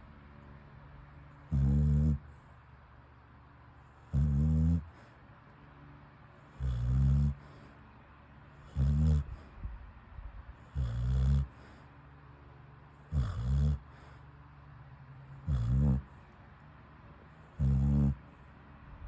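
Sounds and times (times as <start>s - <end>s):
dog snoring: 1.4s - 2.4s, 3.9s - 5.1s, 6.5s - 7.7s, 8.6s - 9.5s, 10.6s - 11.8s, 13.0s - 14.2s, 15.3s - 16.1s, 17.4s - 18.3s
dog breathing quietly: 3.7s - 5.6s, 6.2s - 19.0s.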